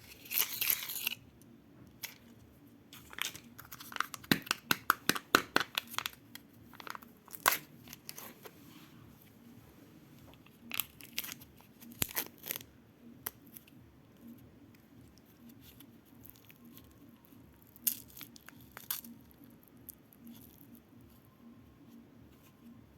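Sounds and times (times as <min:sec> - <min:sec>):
wrappers crinkling and tearing: 0:00.0 - 0:01.2, 0:03.0 - 0:08.4, 0:10.7 - 0:12.6.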